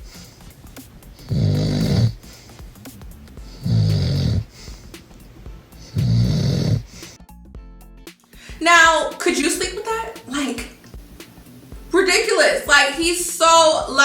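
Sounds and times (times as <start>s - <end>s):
man snoring loudly: 0.0s - 7.2s.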